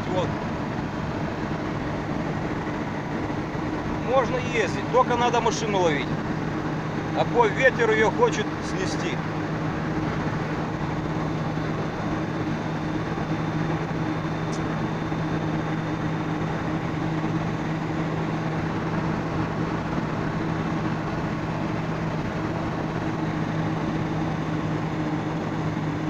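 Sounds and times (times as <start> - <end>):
car engine drone: 0.0 - 26.0.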